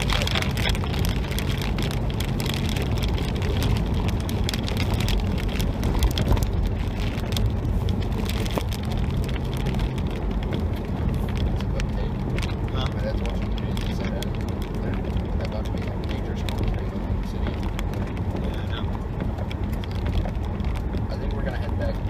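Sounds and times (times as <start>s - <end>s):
engine and road rumble: 0.0s - 22.0s
heavy rain on car roof: 0.0s - 22.0s.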